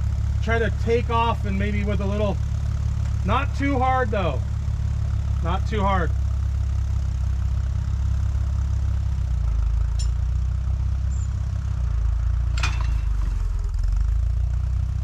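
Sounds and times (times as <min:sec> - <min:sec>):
tractor engine running: 0:00.0 - 0:15.0.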